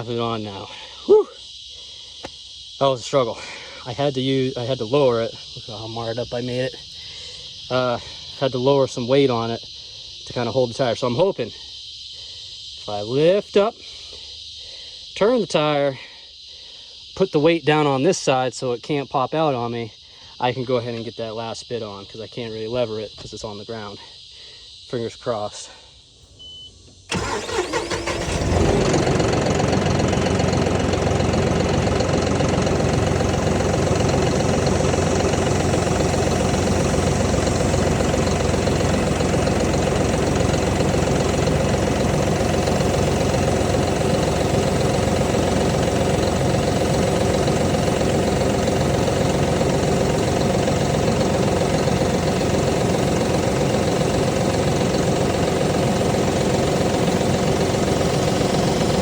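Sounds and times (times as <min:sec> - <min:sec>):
engine starting and running: 0:03.4 - 0:08.5, 0:26.9 - 0:59.0.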